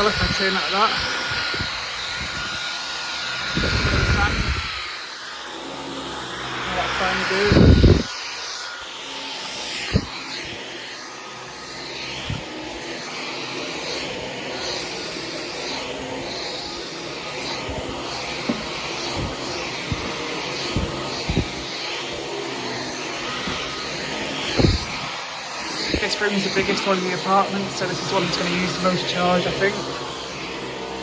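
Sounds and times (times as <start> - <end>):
stick vacuum whining: 0.0 - 31.0
cleaner head knocking: 17.7 - 21.6, 23.4 - 23.8.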